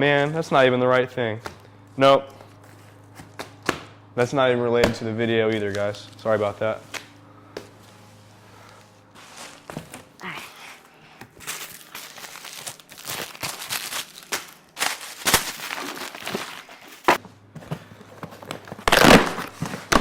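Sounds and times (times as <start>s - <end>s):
packaging crinkling and tearing: 11.3s - 17.2s, 18.4s - 20.0s.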